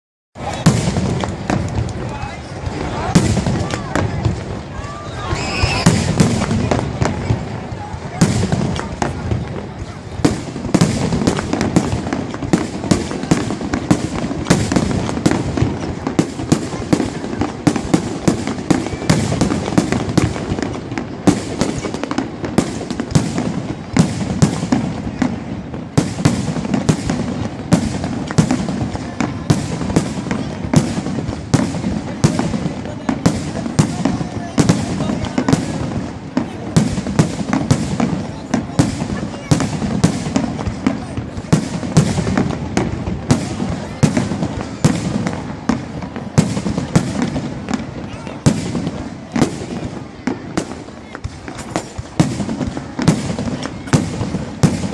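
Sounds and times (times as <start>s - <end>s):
fireworks cracking: 0.4s - 54.9s
firework shells bursting: 50.6s - 54.9s.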